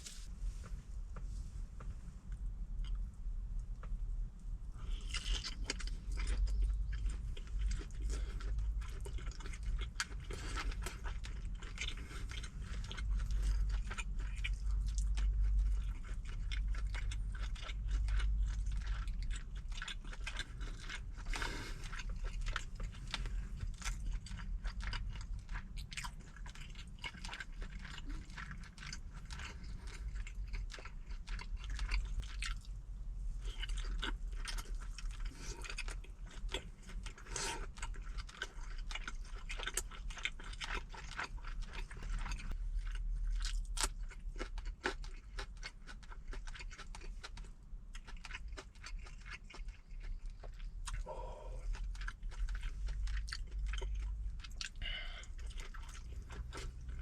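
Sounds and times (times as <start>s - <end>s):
person chewing and crunching food: 0.0s - 4.0s, 4.7s - 57.0s.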